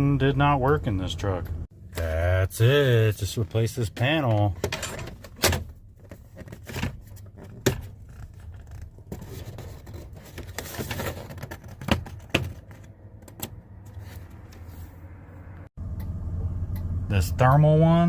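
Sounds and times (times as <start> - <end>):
plastic cover scraping: 6.0 - 12.9
low steady hum: 14.2 - 18.0.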